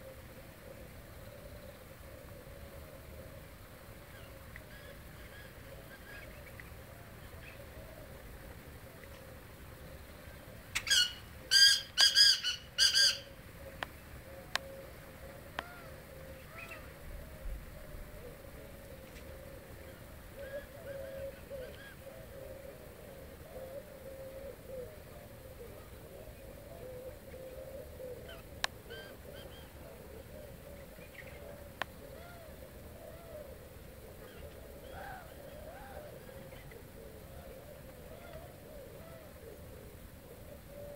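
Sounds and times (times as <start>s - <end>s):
wavering low bird call: 8.9s - 40.9s.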